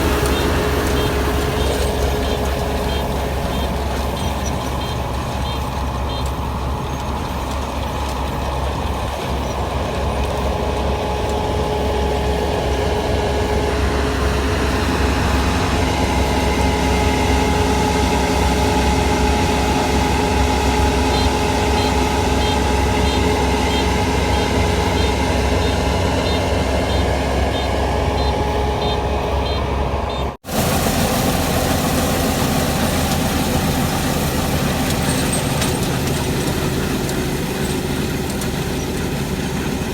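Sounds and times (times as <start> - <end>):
heavy engine running under load: 0.0 - 39.9
mechanical whine: 0.0 - 39.9
faint high beeping: 21.1 - 30.4.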